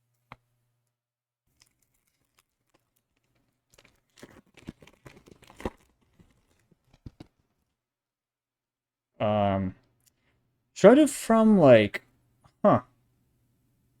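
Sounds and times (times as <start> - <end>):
plastic wrapper tearing and crinkling: 1.5 - 7.7.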